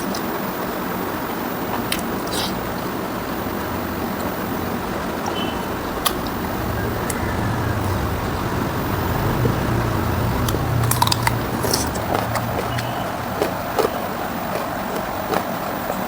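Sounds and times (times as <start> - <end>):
chewing with wet smacks: 1.4 - 16.0
low rumble: 3.0 - 14.5.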